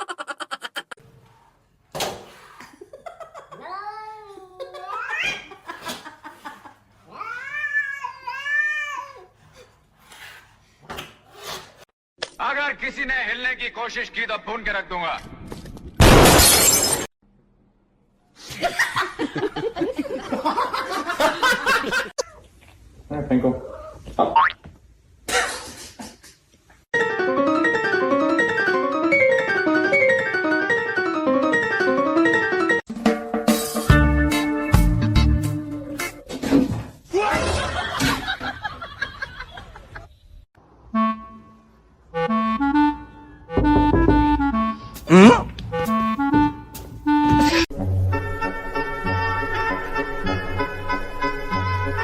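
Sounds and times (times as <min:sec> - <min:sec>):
cat yowling: 0:07.1 - 0:09.3
bouncy piano music: 0:27.0 - 0:36.2, 0:42.1 - 0:52.0.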